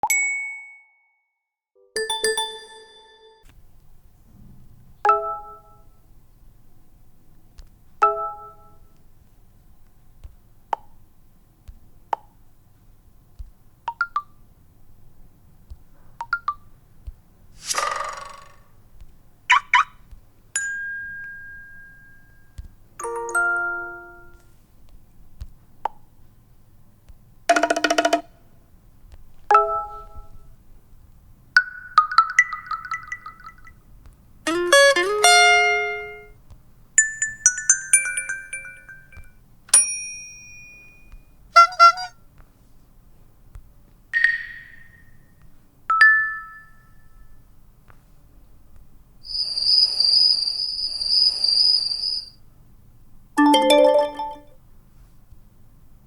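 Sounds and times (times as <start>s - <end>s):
multi-note notification chimes: 2.0s - 3.3s, 23.0s - 24.4s, 53.4s - 54.5s
notification blips and dings: 2.0s - 3.3s, 23.0s - 24.4s, 53.4s - 54.6s.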